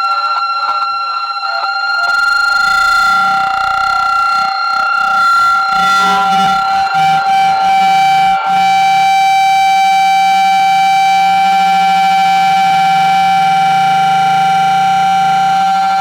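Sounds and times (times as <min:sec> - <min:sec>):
megaphone high-pitched tone: 0:01.4 - 0:08.8.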